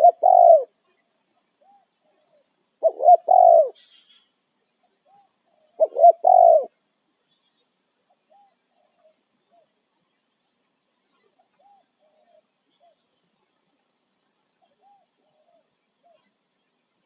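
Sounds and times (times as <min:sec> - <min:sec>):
dove cooing: 0:00.0 - 0:00.7, 0:02.8 - 0:03.8, 0:05.8 - 0:06.7.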